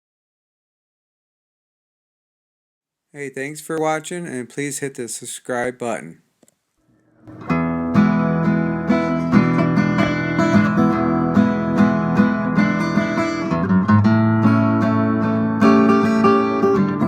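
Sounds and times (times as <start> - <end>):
strummed acoustic guitar: 7.2 - 17.0.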